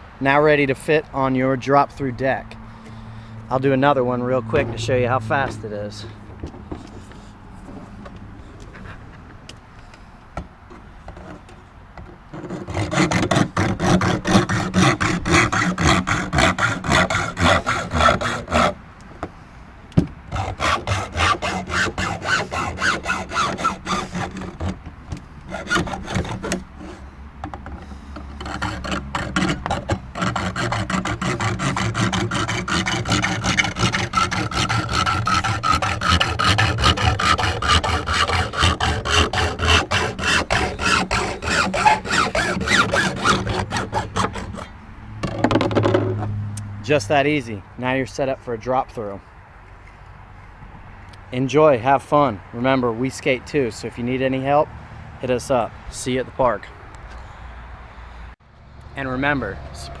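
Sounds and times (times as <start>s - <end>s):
hand hacksaw cutting: 12.3s - 18.8s, 20.3s - 44.7s.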